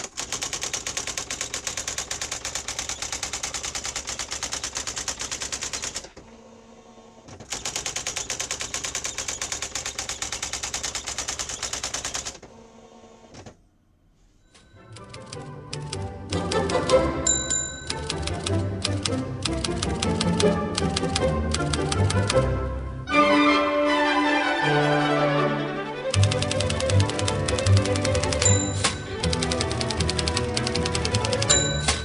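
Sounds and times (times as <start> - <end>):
daisy wheel typewriter printing: 0.0 - 6.3, 7.3 - 12.5, 14.6 - 22.4, 26.1 - 32.0.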